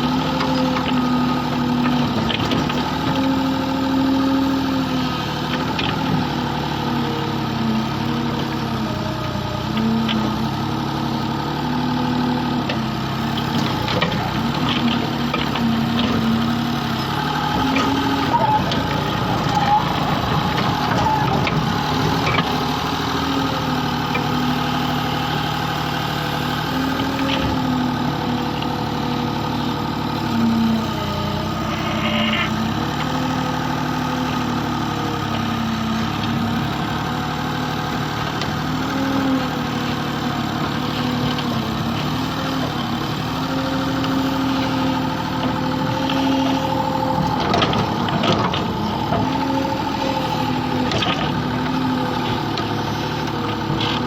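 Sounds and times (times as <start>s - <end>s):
excavator diesel engine running: 0.0s - 54.0s.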